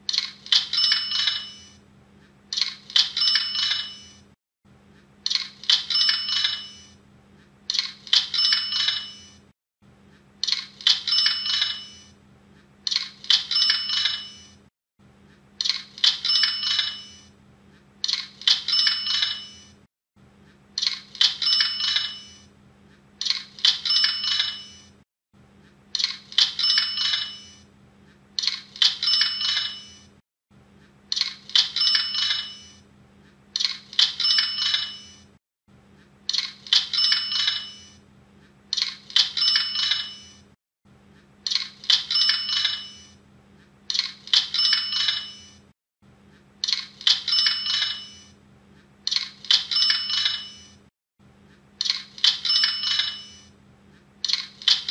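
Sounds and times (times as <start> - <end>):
cash register jingling rings: 3.1 - 4.2, 5.9 - 6.9, 8.3 - 9.4, 11.0 - 12.0, 13.5 - 14.6, 16.2 - 17.2, 18.6 - 19.7, 21.4 - 22.4, 23.8 - 24.8, 26.6 - 27.5, 28.9 - 30.0, 34.0 - 35.2, 36.9 - 37.9, 39.3 - 40.4, 42.0 - 43.1, 44.4 - 45.6, 47.1 - 48.3, 49.6 - 50.8, 52.4 - 53.5.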